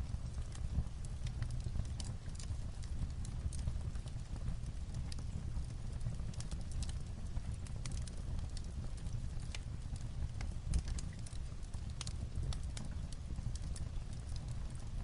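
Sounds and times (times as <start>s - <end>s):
fireplace crackling and popping: 0.0s - 15.0s
light rain on a roof: 0.0s - 15.0s.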